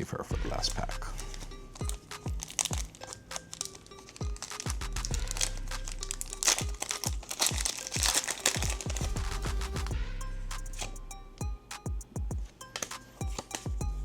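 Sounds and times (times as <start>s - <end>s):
music with kick-drum beat: 0.3s - 3.0s, 4.2s - 14.0s
foil wrapper crinkling and tearing: 0.6s - 9.9s.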